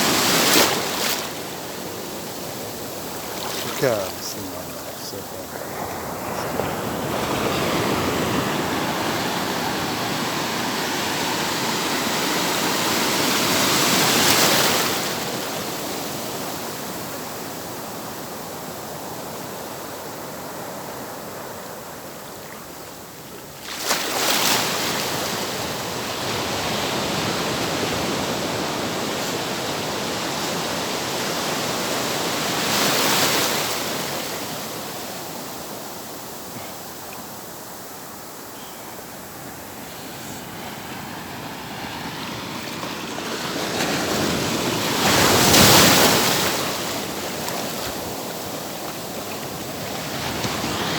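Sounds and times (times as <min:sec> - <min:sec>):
ocean waves breaking: 0:00.0 - 0:17.7, 0:18.7 - 0:50.9
wave crashing: 0:02.9 - 0:11.0, 0:38.9 - 0:50.9.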